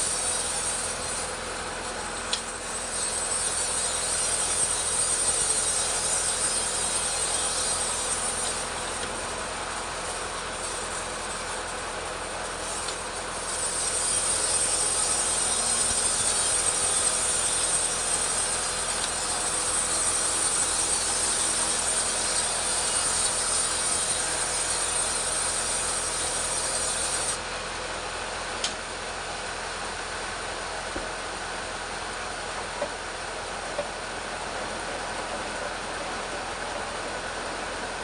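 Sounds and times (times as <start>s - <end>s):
chainsaw cutting log: 0.0s - 27.4s.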